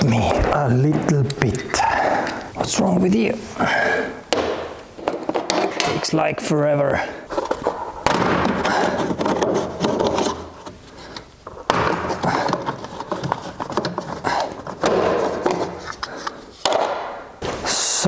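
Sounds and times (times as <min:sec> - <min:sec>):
tools scraping and rubbing: 0:07.3 - 0:17.6.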